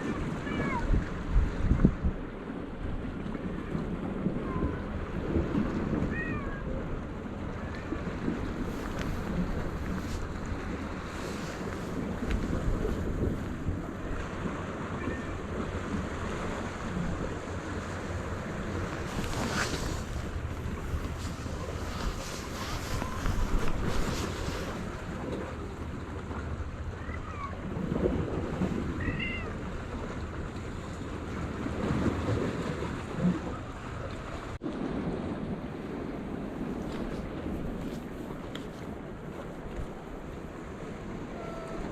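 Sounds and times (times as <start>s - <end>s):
sea waves washing: 0.0s - 41.9s
wind on microphone: 0.0s - 41.9s
cat meowing: 15.0s - 15.4s, 29.0s - 29.6s, 41.4s - 41.9s.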